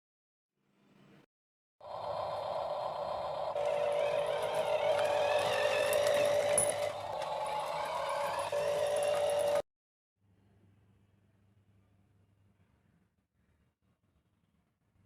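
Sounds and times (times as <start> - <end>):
electric gear motor whining: 1.8 - 9.6.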